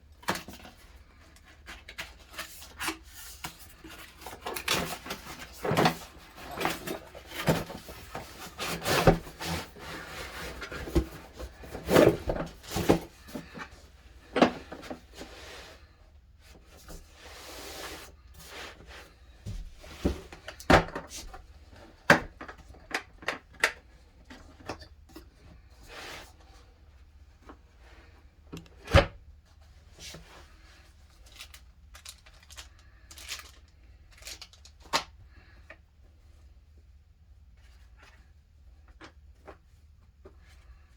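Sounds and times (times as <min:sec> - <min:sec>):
packaging rubbing and scraping: 0:01.6 - 0:13.6.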